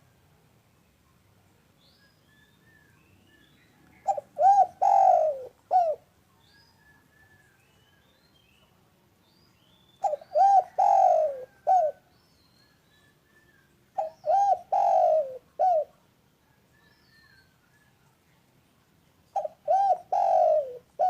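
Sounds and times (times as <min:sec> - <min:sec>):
small birds chirping: 0:00.0 - 0:21.0
dove cooing: 0:03.9 - 0:06.1, 0:10.0 - 0:12.1, 0:14.0 - 0:16.0, 0:19.3 - 0:21.0.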